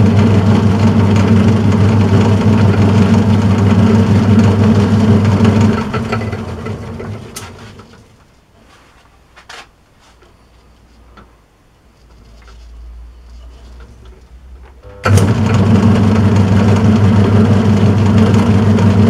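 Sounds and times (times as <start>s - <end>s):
metal lathe motor humming: 0.0s - 7.6s, 14.8s - 19.0s.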